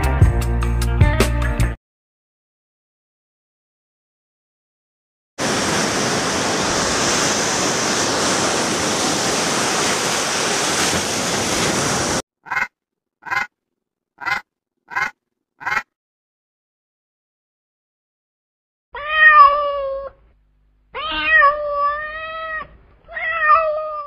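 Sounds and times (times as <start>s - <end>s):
steady rushing noise: 5.4s - 12.2s
duck quacks: 12.5s - 13.5s, 14.2s - 15.9s.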